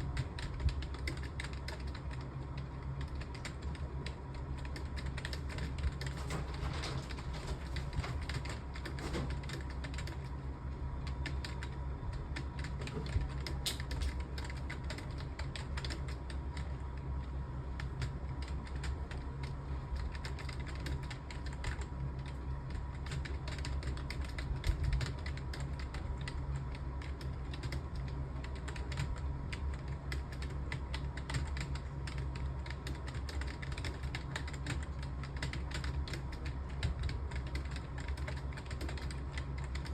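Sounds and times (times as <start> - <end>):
fast typing on keyboard: 0.0 - 10.4, 11.0 - 16.9, 17.8 - 39.9
low steady hum: 0.0 - 39.9.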